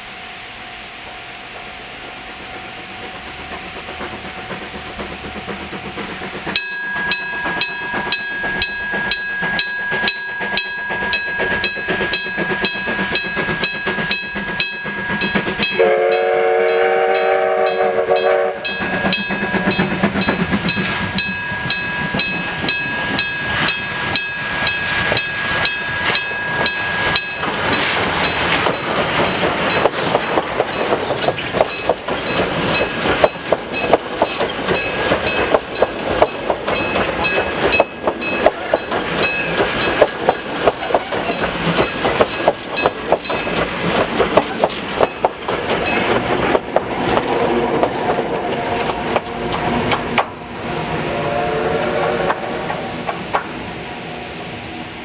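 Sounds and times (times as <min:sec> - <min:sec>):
train wheels clattering: 0:01.5 - 0:53.8
level-crossing bell ringing: 0:06.6 - 0:30.0
steam whistle: 0:15.6 - 0:18.9, 0:48.5 - 0:53.2.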